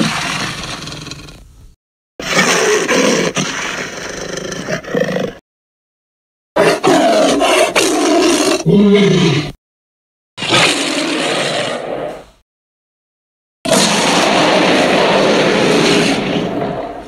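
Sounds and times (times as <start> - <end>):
monster roar: 13.7 - 17.0.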